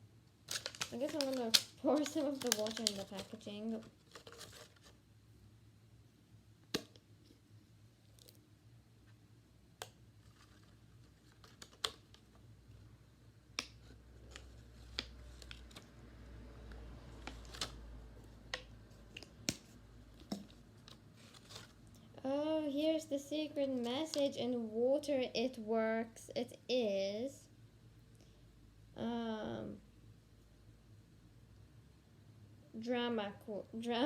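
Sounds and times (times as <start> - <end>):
plastic packaging clicks and taps: 0.5 - 3.3, 6.7 - 7.0, 11.4 - 12.2, 18.5 - 21.0.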